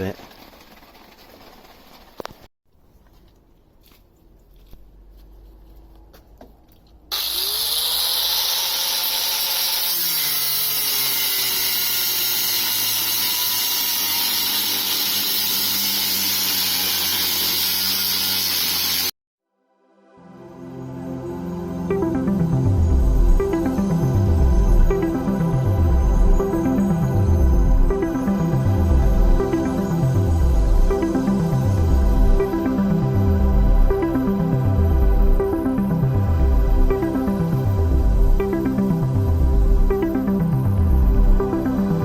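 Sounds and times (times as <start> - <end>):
electric power tool motor: 7.1 - 19.1.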